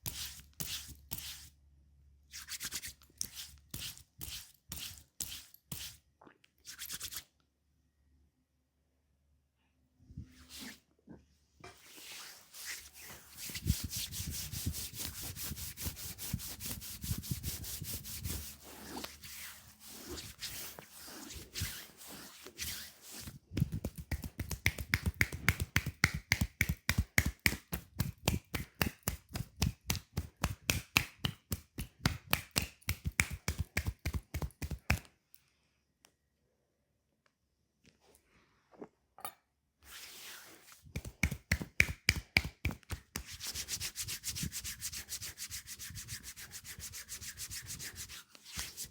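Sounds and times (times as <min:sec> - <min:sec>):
hands rubbing skin: 0:11.8 - 0:35.1, 0:39.9 - 0:48.9
hand slaps on calf: 0:41.0 - 0:43.3.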